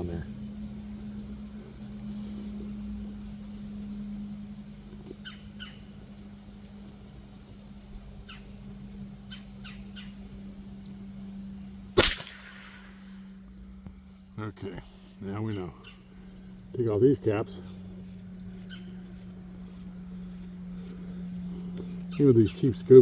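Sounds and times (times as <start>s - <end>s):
insect buzz: 0.0s - 23.0s
bird chirps: 5.1s - 6.0s, 15.4s - 16.7s
rifle shot: 12.0s - 13.3s.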